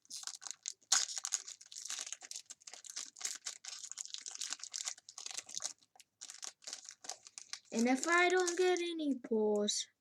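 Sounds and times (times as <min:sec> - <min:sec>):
foil wrapper crinkling: 0:00.0 - 0:09.0.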